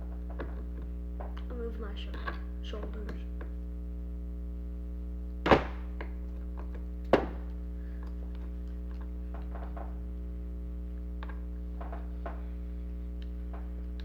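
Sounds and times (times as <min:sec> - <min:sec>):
steady electrical hum: 0:00.0 - 0:14.0
dull plastic thunks: 0:05.4 - 0:06.2, 0:07.1 - 0:07.5.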